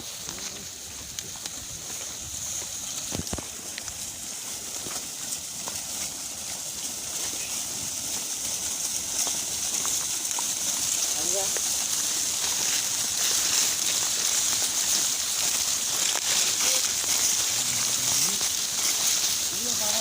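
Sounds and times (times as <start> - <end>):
high-pitched hiss: 0.0 - 20.0
faint animal sounds: 16.3 - 18.6.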